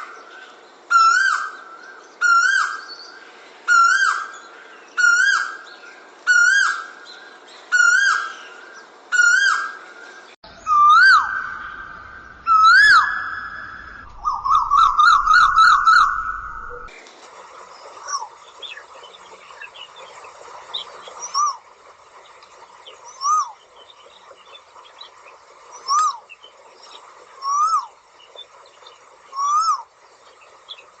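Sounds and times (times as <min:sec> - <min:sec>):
bird whistled calls: 0:10.6 - 0:16.9, 0:27.4 - 0:27.9, 0:29.3 - 0:29.8.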